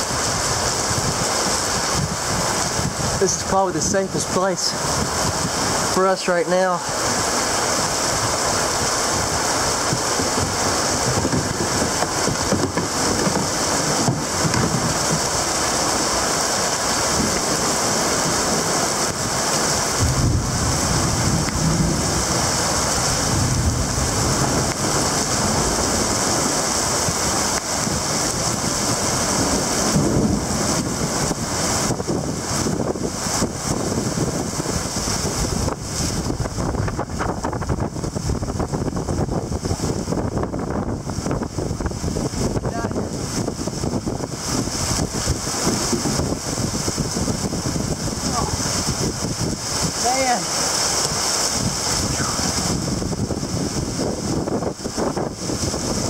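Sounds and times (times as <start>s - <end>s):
heavy rain pouring: 0.0s - 56.0s
low thunder rumble: 7.0s - 50.0s.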